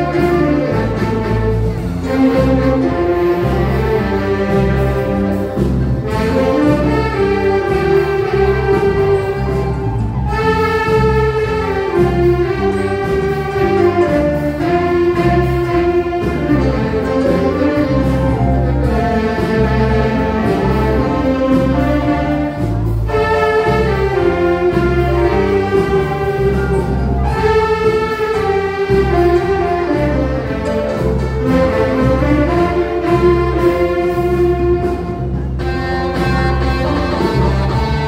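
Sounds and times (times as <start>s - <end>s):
instrumental melody over bass beat: 0.0s - 38.0s.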